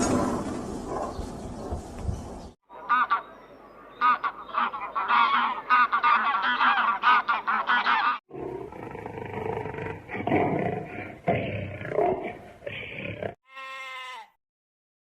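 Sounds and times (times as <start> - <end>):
waterfowl honking: 2.7 - 3.4, 4.0 - 8.2.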